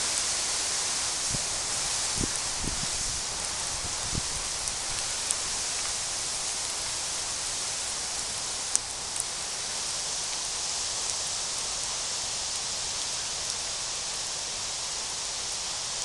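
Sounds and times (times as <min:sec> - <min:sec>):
campfire hissing and crackling: 0:00.0 - 0:16.0
burning wood popping: 0:01.2 - 0:10.4.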